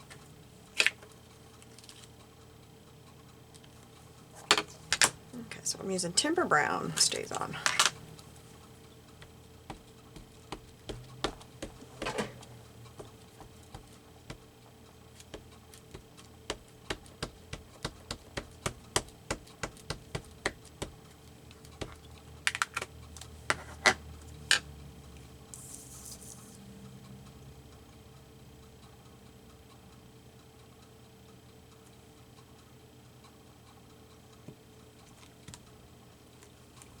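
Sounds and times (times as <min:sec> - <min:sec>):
ink pad tapping rubber stamp: 0:09.2 - 0:12.4, 0:13.0 - 0:14.5, 0:15.2 - 0:22.9.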